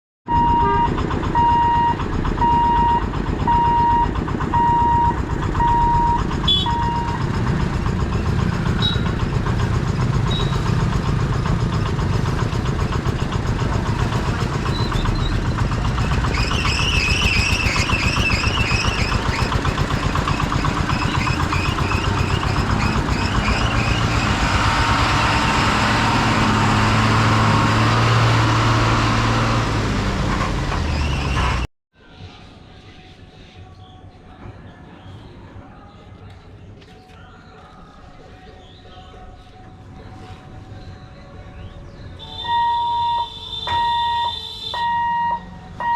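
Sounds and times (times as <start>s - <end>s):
wavering high-pitched tone: 0.3s - 7.3s, 42.2s - 45.9s
level crossing warning beeper: 0.3s - 7.7s, 42.2s - 45.9s
train rumbling and clattering: 0.8s - 31.7s.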